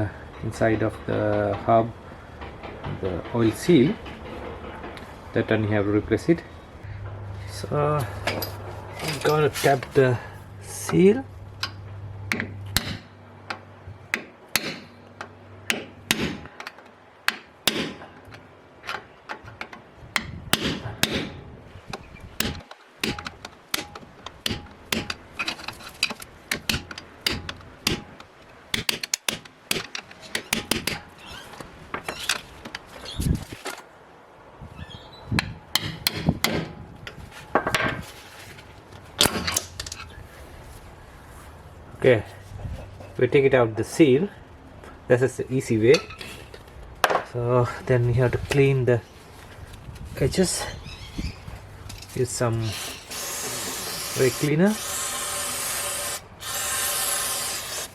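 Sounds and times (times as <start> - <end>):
hammer tapping on metal: 22.4 - 25.2, 26.0 - 31.1.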